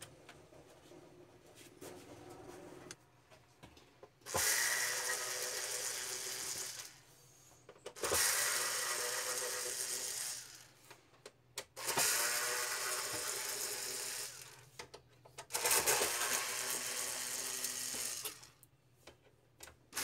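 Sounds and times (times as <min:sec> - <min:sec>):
small motor running: 0:04.4 - 0:07.0, 0:08.0 - 0:10.7, 0:11.8 - 0:14.6, 0:15.5 - 0:18.5.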